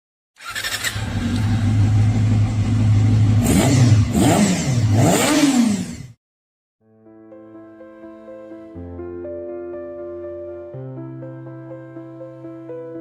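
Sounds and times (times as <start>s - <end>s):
motorcycle engine idling and revving: 0.4s - 6.2s.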